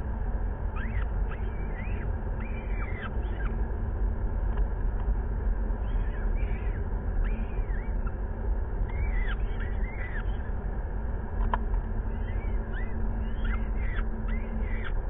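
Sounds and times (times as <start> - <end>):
steady low rumble: 0.0 - 15.0
falcon chicks chirping: 0.8 - 3.6, 8.9 - 10.5, 12.1 - 15.0.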